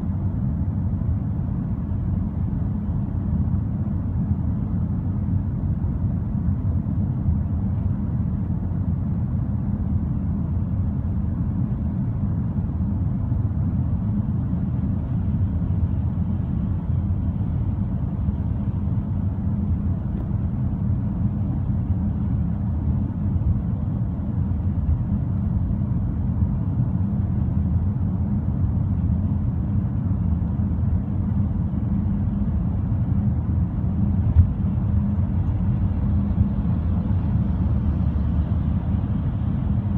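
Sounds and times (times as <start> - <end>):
car interior rumble: 0.0 - 39.9.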